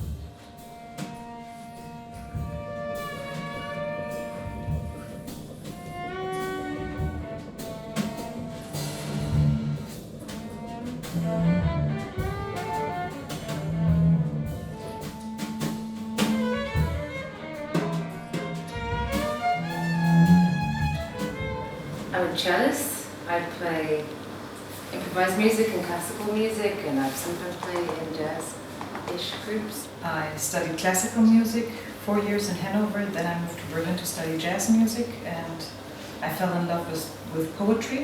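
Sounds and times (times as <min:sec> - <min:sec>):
bowed violin and cello: 0:00.5 - 0:22.4.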